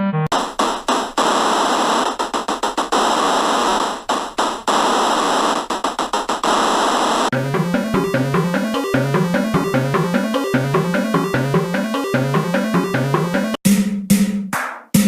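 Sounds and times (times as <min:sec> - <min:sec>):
harsh synthesized white noise: 0:00.3 - 0:07.3.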